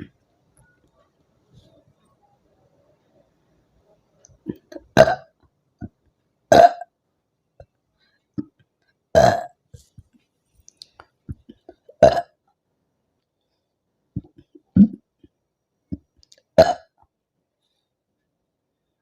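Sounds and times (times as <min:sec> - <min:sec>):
woman burping loudly: 0:04.4 - 0:05.4, 0:06.5 - 0:06.9, 0:09.2 - 0:09.6, 0:16.6 - 0:16.9.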